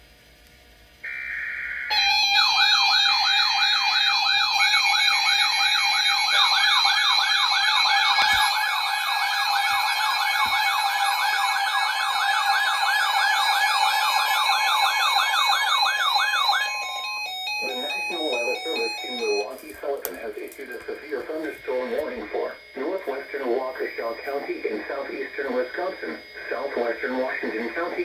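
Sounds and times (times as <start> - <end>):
electronic warbling siren: 1.0 - 19.7
data tones: 4.6 - 19.8.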